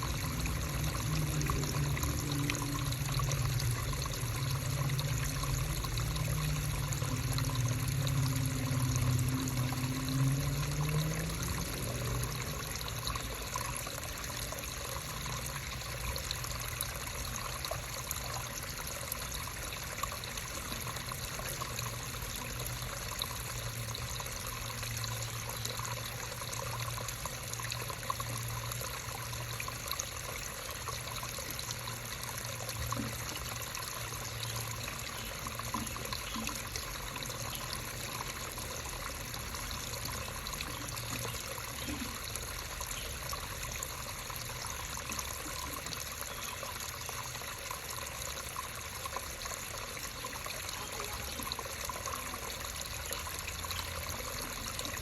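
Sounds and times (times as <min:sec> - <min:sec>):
creek water babbling: 0:00.0 - 0:55.0.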